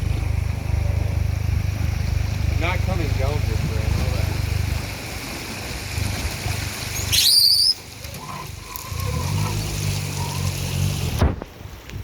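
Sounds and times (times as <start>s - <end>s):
boat motor idling: 0.0s - 7.2s
shrill high-pitched squeal: 7.1s - 7.8s.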